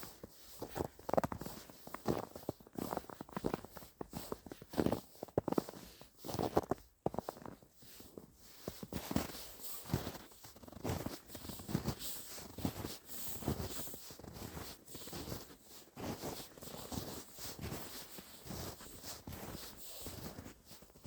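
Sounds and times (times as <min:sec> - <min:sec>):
footsteps crunching through snow: 0:00.2 - 0:21.0.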